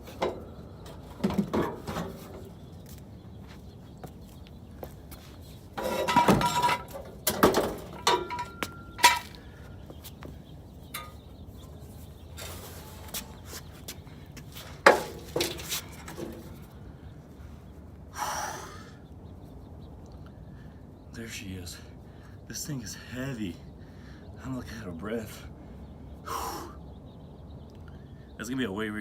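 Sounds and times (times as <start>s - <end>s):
metal clanks and clinks: 5.8s - 9.4s, 10.9s - 11.3s, 14.8s - 16.5s.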